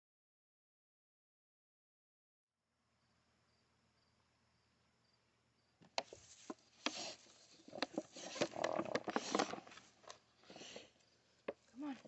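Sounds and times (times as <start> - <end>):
scraping rustling noise: 6.0 - 10.9.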